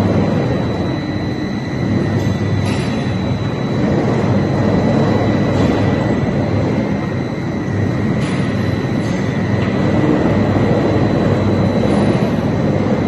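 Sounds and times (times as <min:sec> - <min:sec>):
constant high whine: 0:00.0 - 0:13.0.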